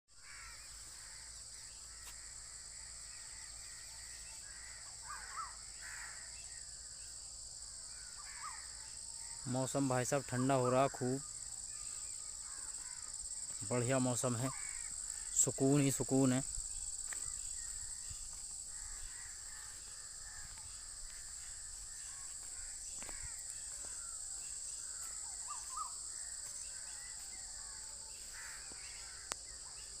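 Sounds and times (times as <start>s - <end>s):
crows cawing: 0.2s - 6.6s, 7.8s - 15.5s, 17.0s - 29.6s
insects droning: 0.2s - 30.0s
bird calls and chirps: 16.8s - 30.0s.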